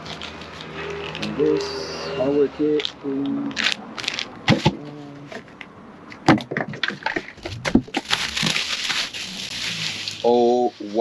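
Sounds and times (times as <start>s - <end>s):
packaging rustling and scraping: 0.0s - 1.8s, 6.7s - 11.0s
knocks and thuds: 6.2s - 8.6s.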